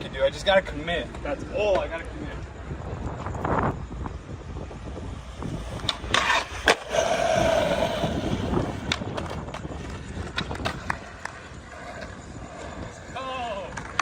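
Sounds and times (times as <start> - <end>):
skateboard trucks grinding: 0.0 - 14.0
skateboard wheels rolling: 0.0 - 14.0.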